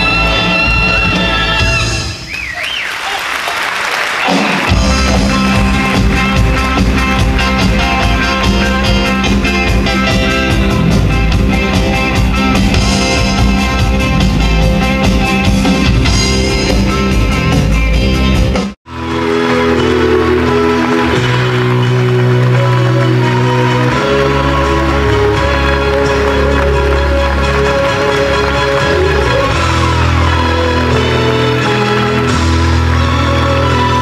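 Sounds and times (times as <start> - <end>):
live band playing: 0.0 - 34.0
regular beat: 4.2 - 23.6
held bass notes: 4.7 - 34.0.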